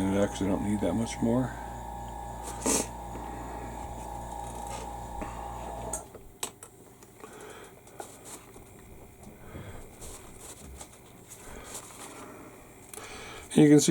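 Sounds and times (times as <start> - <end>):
small electric motor humming: 0.0 - 6.3.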